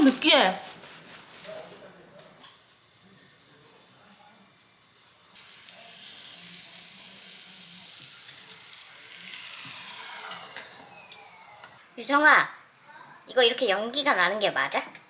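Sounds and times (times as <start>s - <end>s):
food sizzling: 5.2s - 11.7s.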